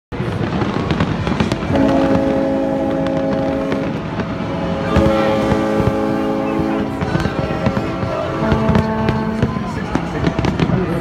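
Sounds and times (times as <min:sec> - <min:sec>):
fireworks bursting and crackling: 0:00.1 - 0:11.0.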